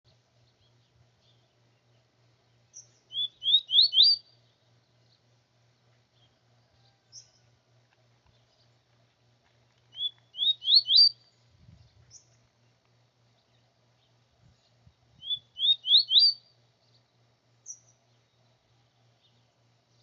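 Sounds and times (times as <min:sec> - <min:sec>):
songbird whistling phrase: 0:03.1 - 0:04.3, 0:10.0 - 0:11.2, 0:15.2 - 0:16.4.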